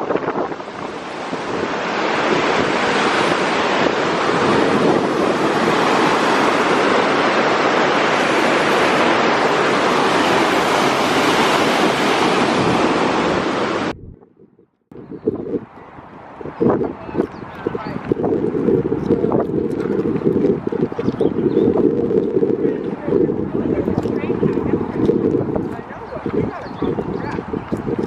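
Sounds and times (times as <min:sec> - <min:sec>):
fast-flowing river water: 0:00.0 - 0:13.9.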